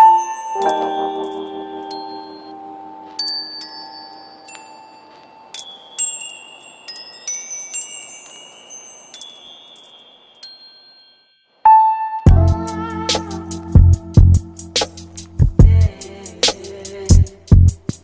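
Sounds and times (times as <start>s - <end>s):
low held tone: 0.0s - 5.6s
chimes tinkling: 0.0s - 12.3s.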